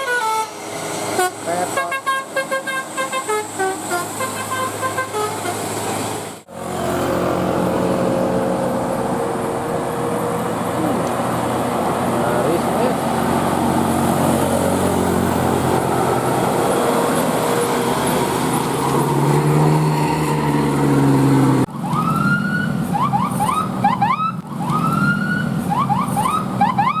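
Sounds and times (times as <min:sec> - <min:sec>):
multi-tone bus horn tune: 0:00.0 - 0:06.3
bus engine: 0:00.0 - 0:27.0
road noise: 0:00.0 - 0:27.0.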